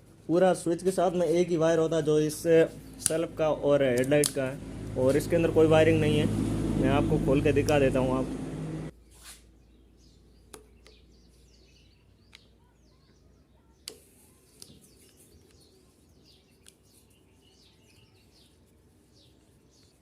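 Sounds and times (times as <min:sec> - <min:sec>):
faint bird chirps: 0:09.1 - 0:20.0.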